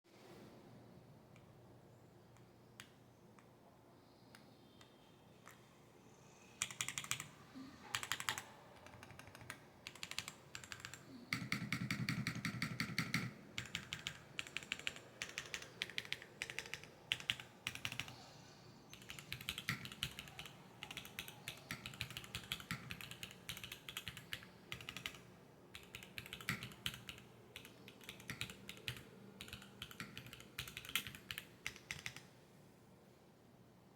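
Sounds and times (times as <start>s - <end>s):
mechanical keyboard typing: 6.6s - 7.3s, 7.9s - 18.1s, 18.9s - 32.2s.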